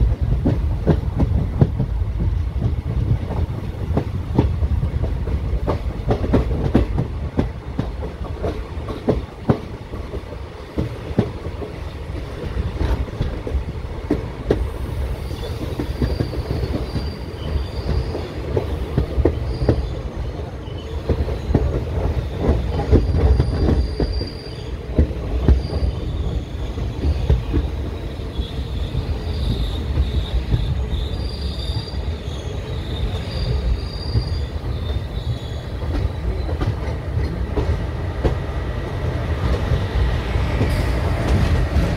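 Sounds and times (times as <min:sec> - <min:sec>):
train wheels clacking over rail joints: 0:00.0 - 0:19.9, 0:21.0 - 0:27.8, 0:39.4 - 0:41.9
high-pitched wheel squeals: 0:28.5 - 0:36.5.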